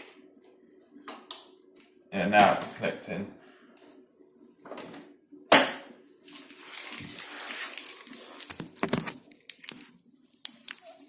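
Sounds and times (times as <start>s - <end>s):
running water hissing: 6.2s - 8.5s.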